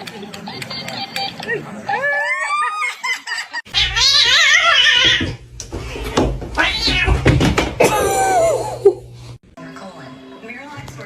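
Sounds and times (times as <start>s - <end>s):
cat yowling: 3.7s - 5.4s.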